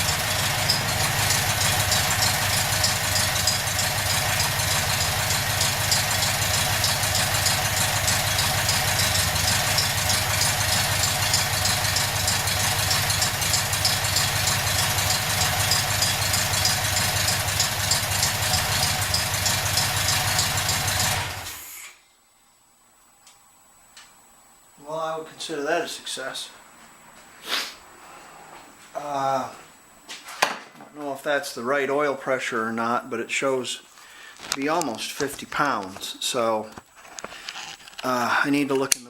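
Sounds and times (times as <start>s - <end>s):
car engine running: 0.0s - 21.6s.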